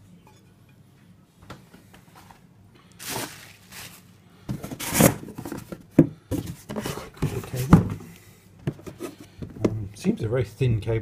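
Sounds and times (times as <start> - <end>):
packaging rustling: 3.0 - 5.8.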